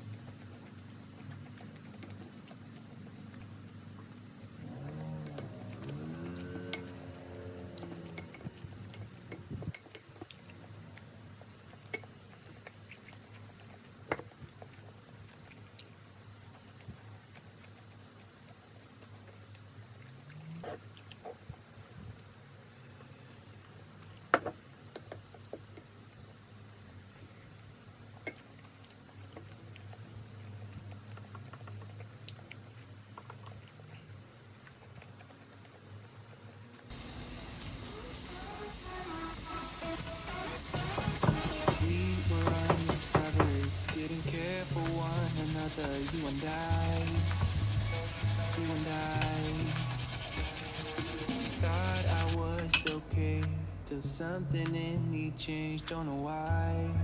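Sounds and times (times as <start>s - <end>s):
kitchen scraping and rubbing: 37.8s - 53.0s
pop music with bass line: 39.8s - 57.0s
low steady hum: 41.8s - 57.0s.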